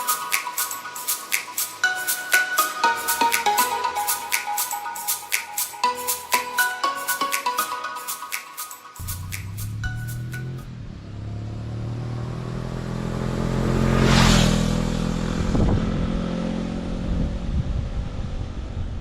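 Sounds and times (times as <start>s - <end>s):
motorcycle engine running: 9.0s - 18.2s.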